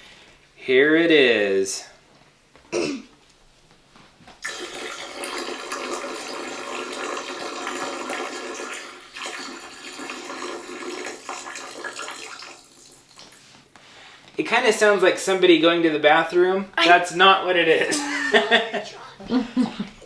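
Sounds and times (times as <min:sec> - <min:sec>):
soda pouring into a can: 0:04.4 - 0:13.2.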